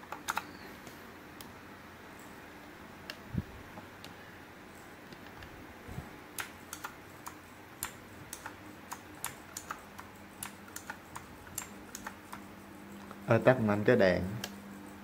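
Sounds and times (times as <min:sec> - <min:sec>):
mechanical keyboard typing: 0:00.0 - 0:00.6, 0:06.4 - 0:12.5.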